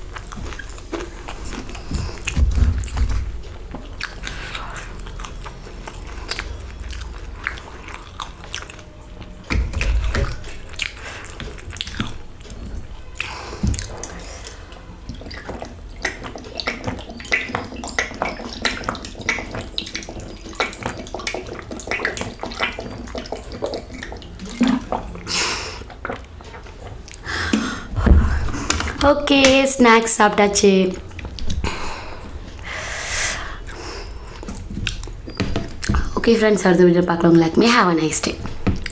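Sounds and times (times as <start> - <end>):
chewing food: 0.0 - 36.5, 38.2 - 38.9
dull thumps: 0.3 - 4.0, 27.3 - 30.4, 34.4 - 36.4.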